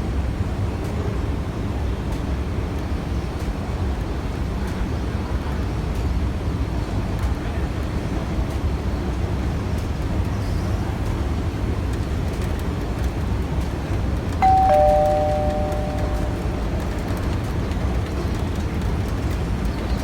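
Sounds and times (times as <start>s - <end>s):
two-note electronic chime: 14.4s - 17.1s.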